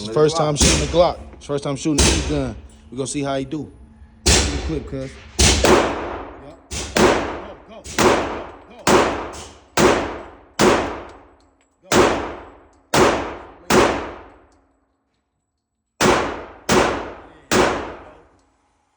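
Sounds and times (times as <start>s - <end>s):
pistol shots: 5.4s - 11.3s, 11.9s - 14.5s, 16.0s - 18.3s.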